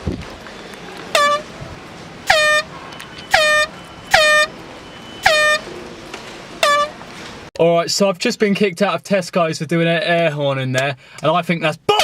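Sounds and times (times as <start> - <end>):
handheld air horn blasts: 1.1 - 1.6, 2.3 - 4.5, 5.2 - 5.7, 6.6 - 7.0.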